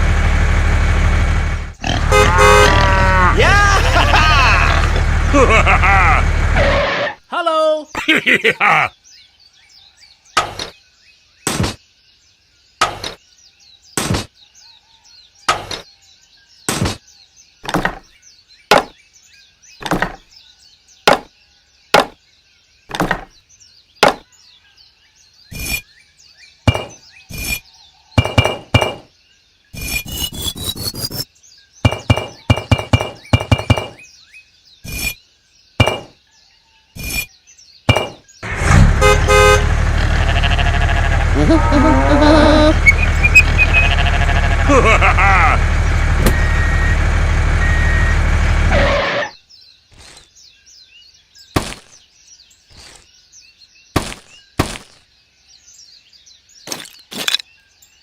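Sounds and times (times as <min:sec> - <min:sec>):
faint bird chirps: 0:07.2 - 0:38.4, 0:40.4 - 0:44.6
sharp metallic knocks: 0:26.7 - 0:27.0, 0:28.2 - 0:29.1, 0:31.8 - 0:34.0, 0:35.8 - 0:36.2, 0:37.9 - 0:38.3.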